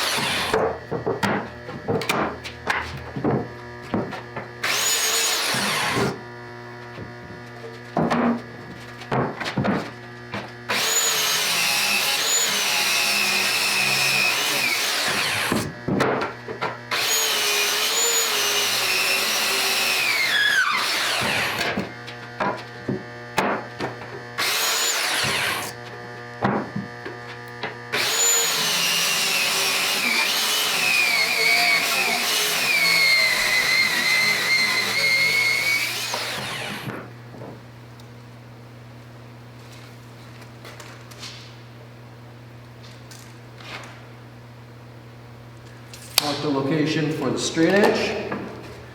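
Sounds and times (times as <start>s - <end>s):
circular saw cutting wood: 0.0s - 0.6s, 4.6s - 6.2s, 10.7s - 15.8s, 16.9s - 22.0s, 24.4s - 26.1s, 27.5s - 37.1s.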